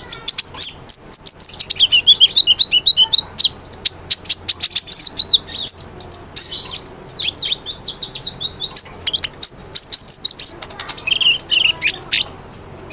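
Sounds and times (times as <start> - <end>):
bird singing high chirps: 0.0 - 12.9.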